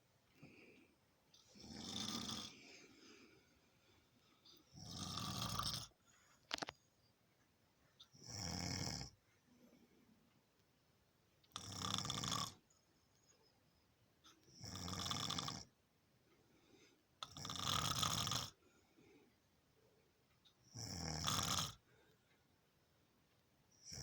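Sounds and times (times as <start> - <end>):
person snoring: 1.4 - 3.2, 4.8 - 5.9, 8.2 - 9.1, 11.6 - 12.6, 14.6 - 15.7, 17.2 - 18.6, 20.8 - 21.8.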